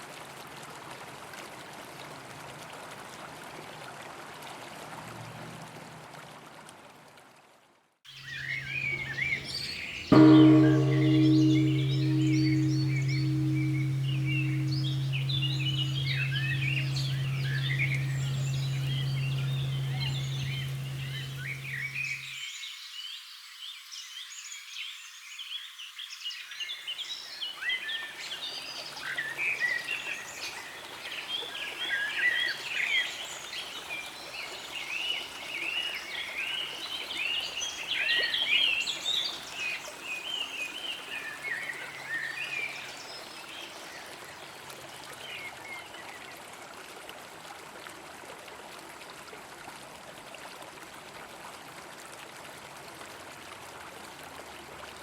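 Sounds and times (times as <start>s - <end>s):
bell humming: 8.2s - 22.3s.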